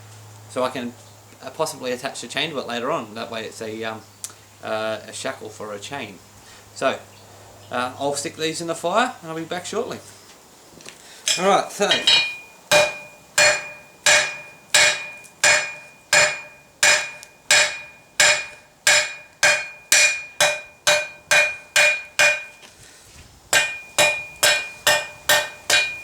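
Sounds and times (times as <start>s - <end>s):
hammer striking steel on anvil: 11.3s - 22.6s, 23.5s - 26.0s.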